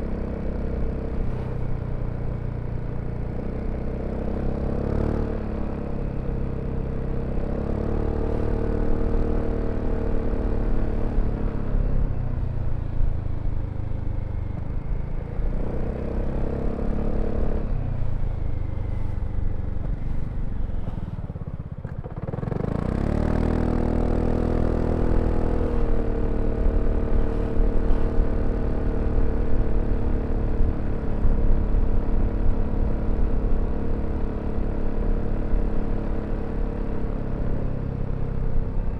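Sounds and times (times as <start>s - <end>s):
wind and road rumble: 0.0s - 38.9s
scooter engine running: 15.9s - 38.9s.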